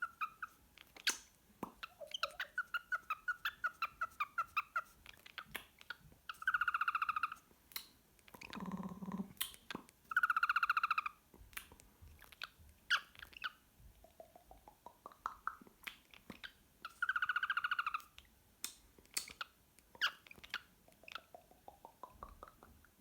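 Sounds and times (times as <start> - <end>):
cockatiel chirping and trilling: 0.0 - 1.2, 1.8 - 7.4, 10.1 - 11.2, 12.3 - 13.6, 15.9 - 18.1, 19.4 - 21.2.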